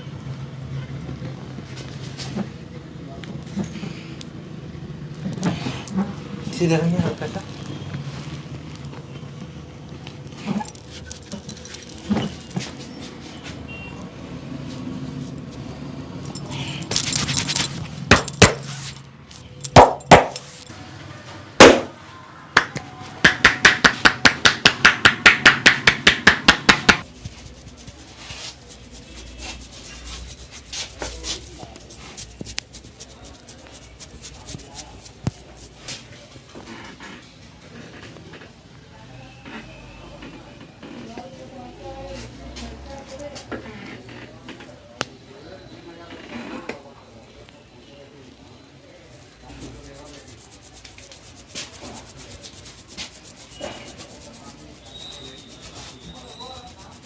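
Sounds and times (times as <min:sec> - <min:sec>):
rapid palm strikes: 0:19.8 - 0:20.4, 0:21.6 - 0:21.9.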